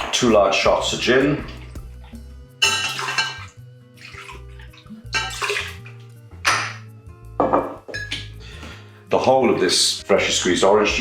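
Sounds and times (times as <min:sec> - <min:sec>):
liquid splashing into container: 0:00.0 - 0:06.8
glass clinking: 0:02.6 - 0:03.5, 0:05.1 - 0:05.8, 0:06.5 - 0:06.8, 0:07.4 - 0:08.4.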